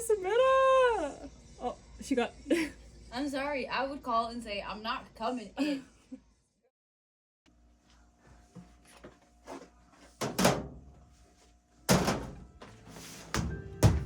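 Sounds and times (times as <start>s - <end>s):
soft background music: 12.4s - 14.0s
doors and cupboards knocking: 13.4s - 14.0s.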